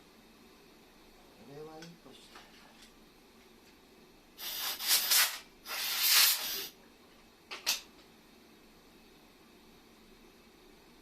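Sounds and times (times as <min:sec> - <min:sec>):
pressurised gas hissing from nozzle: 0:04.4 - 0:06.8.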